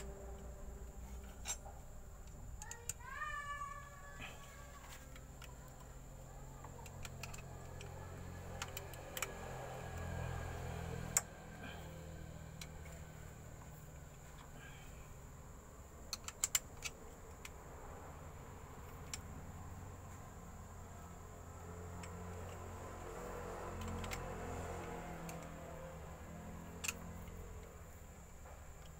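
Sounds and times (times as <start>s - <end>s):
steel parts clicking and clinking: 0.0s - 3.3s
steady low hum: 0.0s - 28.9s.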